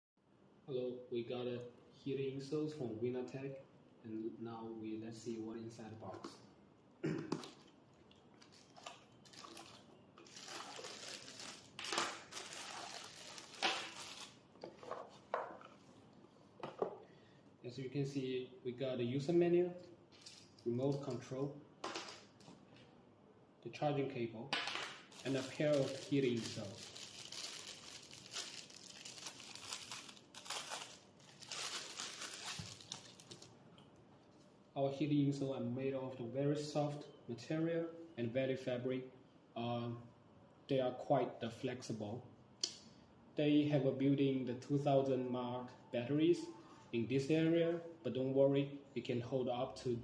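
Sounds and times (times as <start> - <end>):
packaging and paper crackling: 8.4 - 15.1, 20.1 - 21.2, 25.1 - 33.5.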